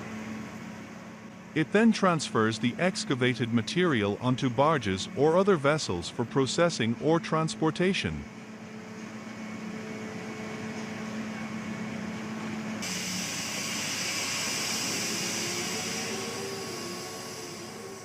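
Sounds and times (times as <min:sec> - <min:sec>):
heavy machinery humming: 0:00.0 - 0:18.0
loud hiss: 0:12.8 - 0:18.0.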